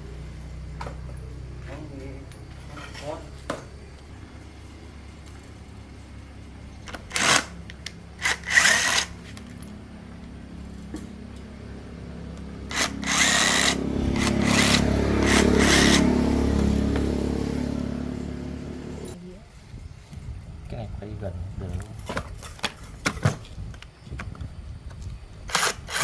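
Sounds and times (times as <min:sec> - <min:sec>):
power tool motor hum: 0:06.8 - 0:09.5, 0:12.4 - 0:19.2, 0:25.5 - 0:26.0.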